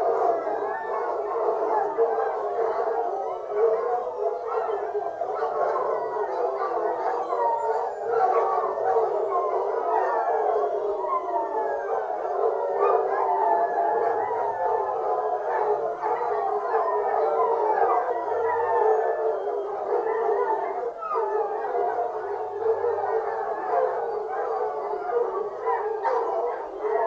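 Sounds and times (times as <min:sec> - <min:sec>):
hounds howling and baying: 0:00.0 - 0:27.0.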